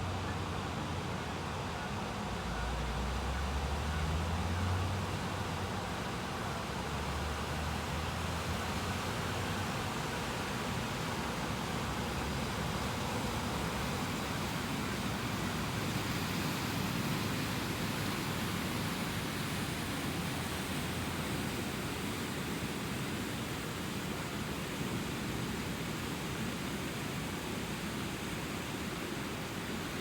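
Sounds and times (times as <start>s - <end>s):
rushing river water: 0.0s - 30.0s.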